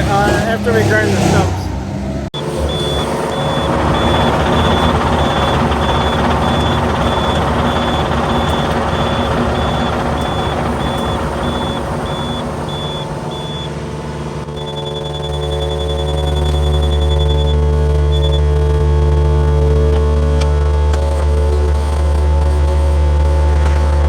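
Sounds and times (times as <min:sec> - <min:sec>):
vehicle engine running: 0:00.0 - 0:24.0
reversing alarm beeping: 0:02.4 - 0:18.6.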